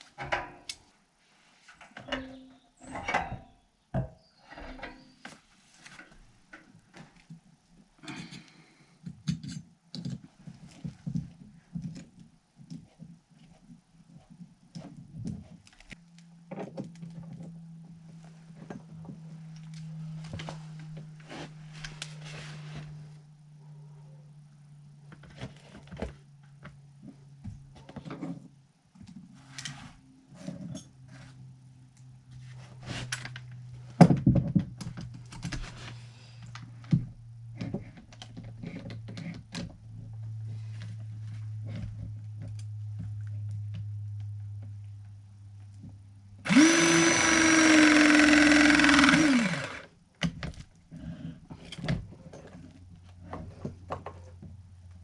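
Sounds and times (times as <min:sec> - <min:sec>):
tools knocking and clattering: 0:01.8 - 0:05.2
power drill motor: 0:46.5 - 0:49.9.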